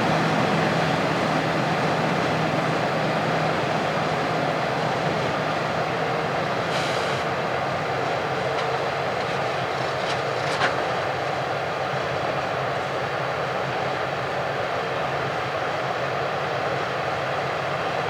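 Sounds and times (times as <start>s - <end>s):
farm machine running: 0.0s - 11.0s.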